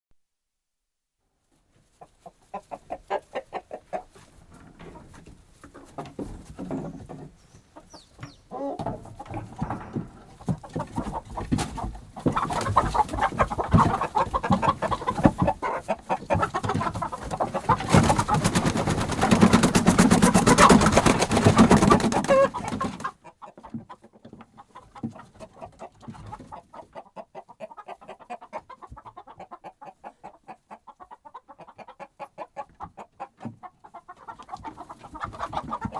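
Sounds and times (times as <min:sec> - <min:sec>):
hens clucking: 0:01.8 - 0:35.9.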